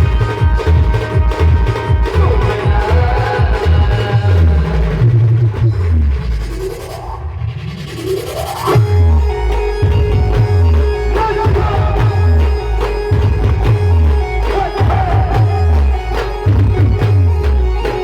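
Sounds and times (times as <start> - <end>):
wavering melody: 8.8 - 18.0.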